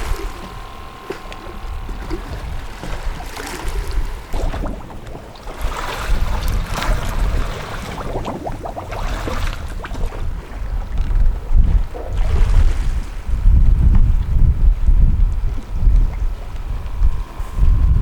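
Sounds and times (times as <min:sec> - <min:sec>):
surf rushing: 0:00.0 - 0:10.1
wind buffeting microphone: 0:00.0 - 0:18.0.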